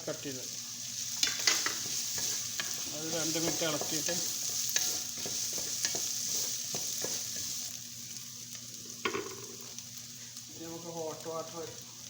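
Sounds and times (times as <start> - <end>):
carrots sizzling in oil: 0.0 - 12.0
spoon knocking and scraping pan: 1.2 - 7.6, 9.1 - 9.6.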